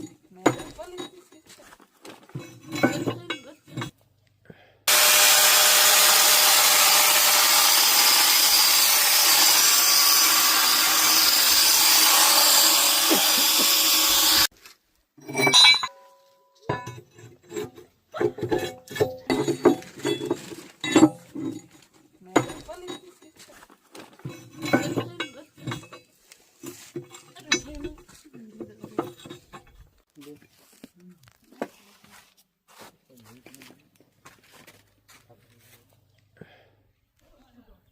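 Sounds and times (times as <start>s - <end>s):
grinder grinding steel: 2.4s - 4.0s, 4.9s - 14.5s, 15.2s - 15.9s, 24.2s - 30.0s.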